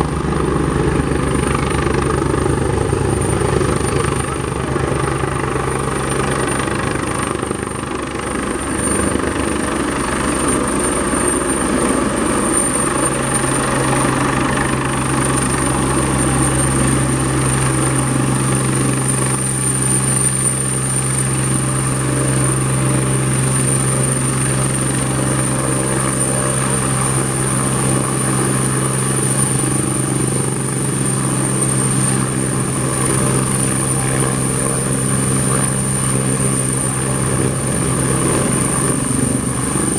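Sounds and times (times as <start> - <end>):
helicopter turbine whine: 0.0 - 39.9
rotor drone: 0.0 - 39.9.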